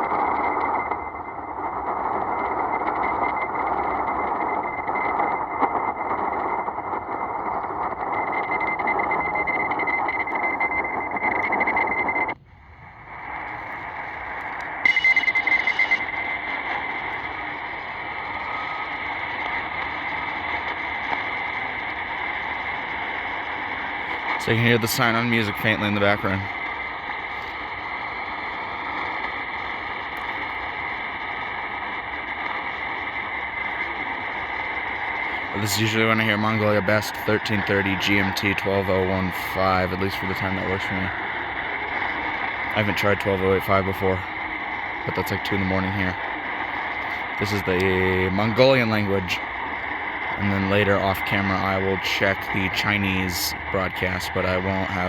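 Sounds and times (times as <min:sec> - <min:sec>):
steady high whistle: 0:00.0 - 0:22.4
shortwave radio static and hiss: 0:00.0 - 0:55.0.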